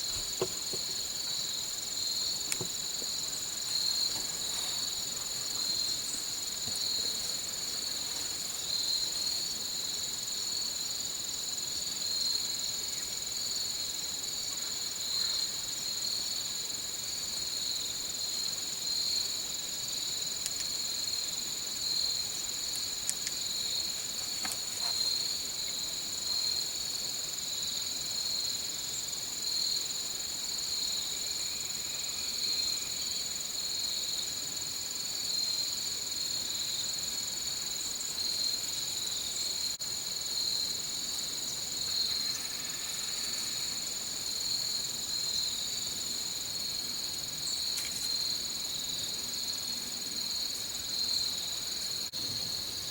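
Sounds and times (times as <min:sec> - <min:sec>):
crickets trilling: 0:00.0 - 0:52.9
faint ticks: 0:20.4 - 0:20.8, 0:22.7 - 0:23.4, 0:47.6 - 0:48.2.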